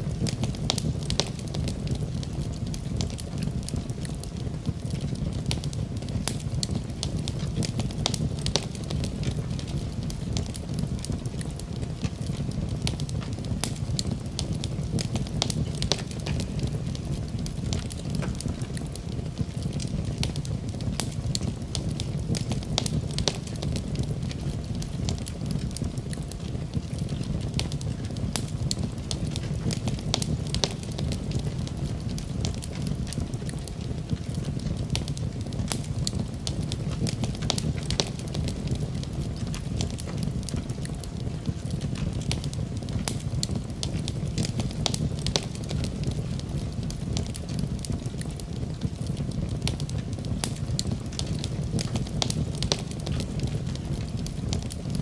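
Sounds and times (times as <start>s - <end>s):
low fire rumble: 0.0s - 55.0s
wood fire crackling and popping: 0.0s - 55.0s.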